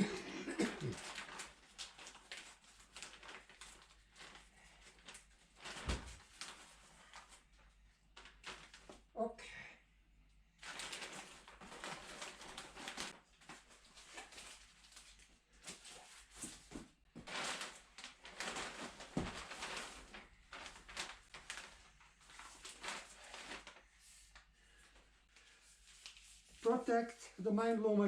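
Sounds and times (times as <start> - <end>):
packaging rustling and crinkling: 0.6 - 9.1, 10.6 - 26.6.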